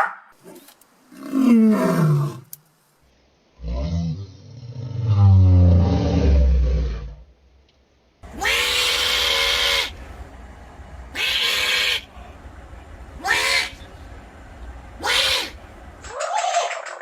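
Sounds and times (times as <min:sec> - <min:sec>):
animal harsh calls: 0:08.2 - 0:10.0, 0:11.1 - 0:12.1, 0:13.2 - 0:13.9, 0:15.0 - 0:17.0.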